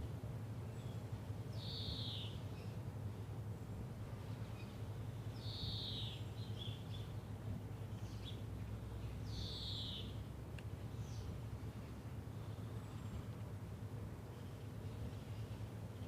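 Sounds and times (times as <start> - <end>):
faint bird chirps: 1.6 - 2.8, 5.4 - 7.1, 9.2 - 10.2
steady low rumble: 6.2 - 16.0.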